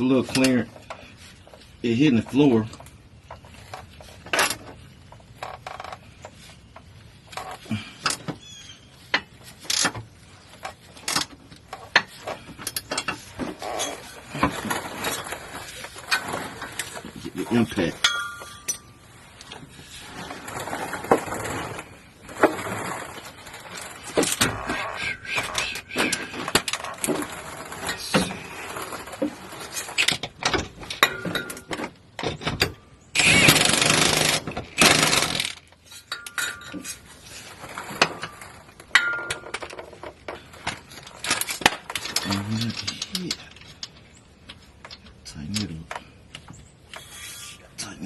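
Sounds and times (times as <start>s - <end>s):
clanks and clicks of metal tools: 18.0s - 19.0s, 29.7s - 37.0s
impact wrench tightening bolts: 32.4s - 36.7s.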